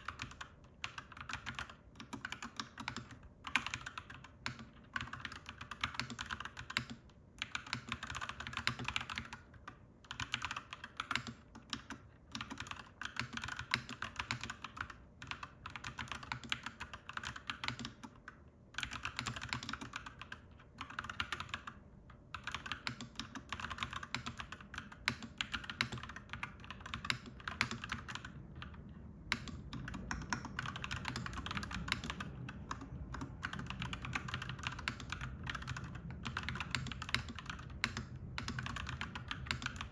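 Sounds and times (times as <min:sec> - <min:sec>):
mechanical keyboard typing: 0:00.0 - 0:39.9
low steady rumble: 0:26.1 - 0:39.9.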